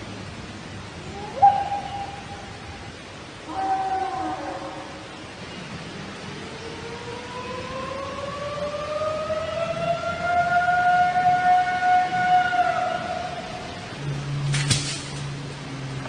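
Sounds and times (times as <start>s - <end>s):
long howling call: 0.8s - 14.4s.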